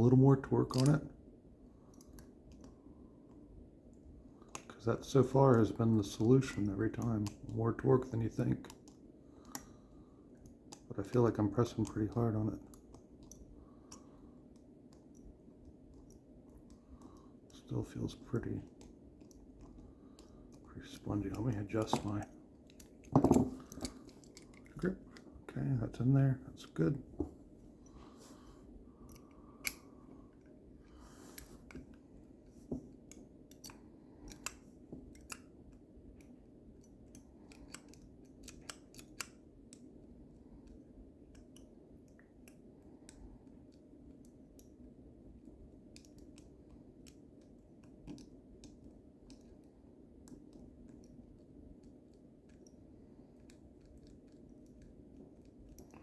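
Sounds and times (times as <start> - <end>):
faint steady hum: 0.0 - 56.0
lock pick clicking and scraping: 0.7 - 1.0, 18.7 - 25.3, 29.0 - 30.6, 32.9 - 39.9, 45.9 - 56.0.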